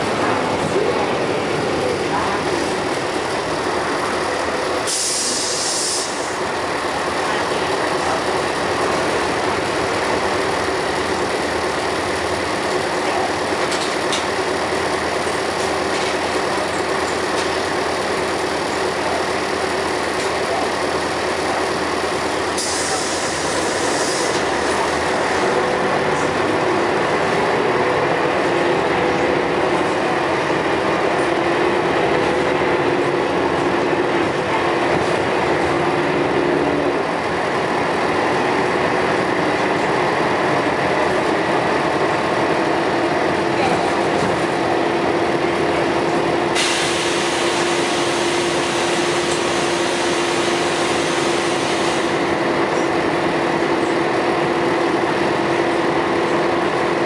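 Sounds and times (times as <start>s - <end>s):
bus engine running: 0.0s - 57.0s
compressed air hiss: 4.9s - 6.4s.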